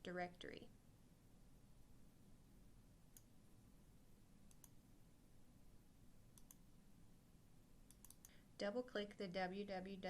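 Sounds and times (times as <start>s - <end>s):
computer mouse clicks: 3.1s - 3.4s, 4.4s - 4.8s, 6.3s - 6.7s, 7.8s - 8.4s.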